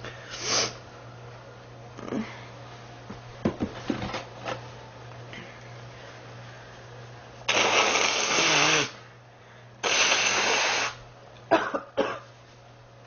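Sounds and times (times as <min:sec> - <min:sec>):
girl coughing: 0:11.5 - 0:12.3.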